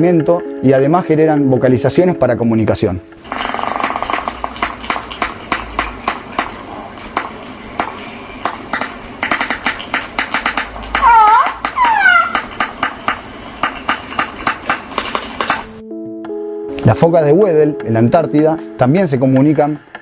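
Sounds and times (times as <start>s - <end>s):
orca echolocation clicks: 3.2s - 15.8s
orca pitched call: 10.9s - 12.6s.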